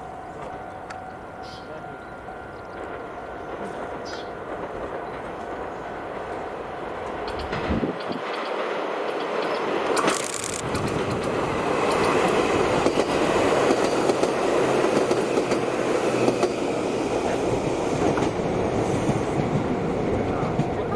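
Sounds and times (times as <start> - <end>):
train wheels rumbling on rails: 0.0 - 20.9
wheels clicking over rail joints: 0.3 - 17.3.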